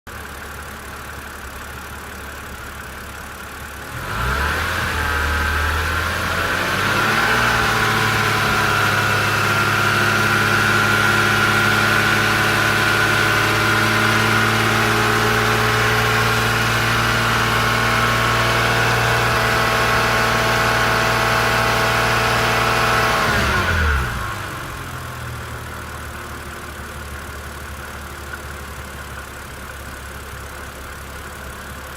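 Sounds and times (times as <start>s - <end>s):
car engine idling and revving: 0.1s - 31.9s
engine knocking: 25.1s - 31.9s.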